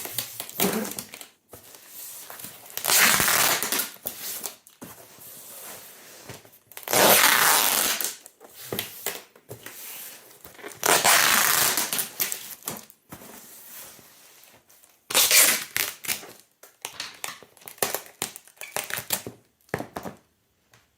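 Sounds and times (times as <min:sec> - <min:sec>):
tape crackling and rustling: 0:00.0 - 0:20.2
packing tape tearing screech: 0:02.8 - 0:04.4, 0:06.8 - 0:08.2, 0:10.8 - 0:12.4, 0:15.1 - 0:16.2.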